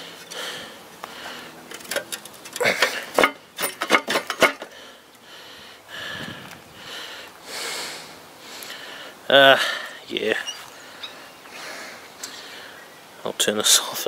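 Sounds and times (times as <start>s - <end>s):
metal engine parts clinking: 1.6s - 4.7s.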